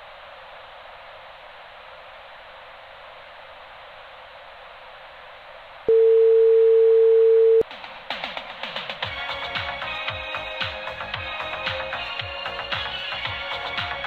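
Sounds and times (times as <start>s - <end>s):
band-limited steady hiss: 0.0s - 14.0s
loud steady tone: 5.9s - 7.6s
pop music: 7.7s - 14.0s.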